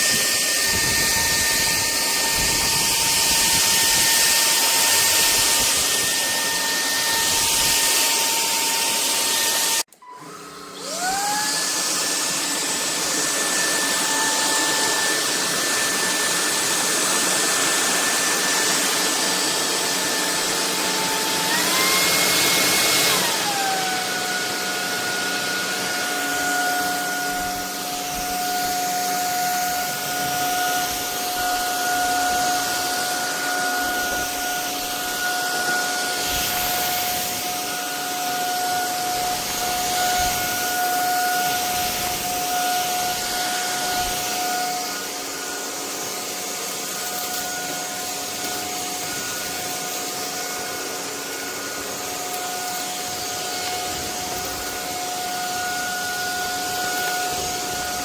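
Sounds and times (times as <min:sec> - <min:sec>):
rushing hiss of air: 0:00.0 - 0:09.8, 0:27.0 - 0:50.4
stick vacuum motor whining: 0:00.0 - 0:58.0.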